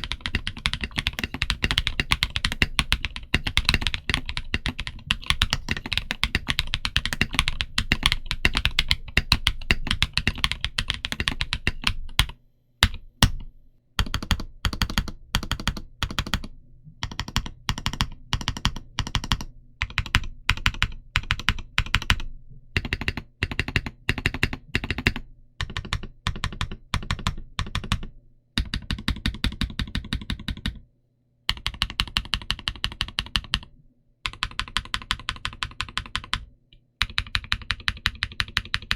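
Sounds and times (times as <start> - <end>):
typing on mechanical keyboard: 0.0 - 13.4, 14.0 - 30.8, 31.5 - 38.9.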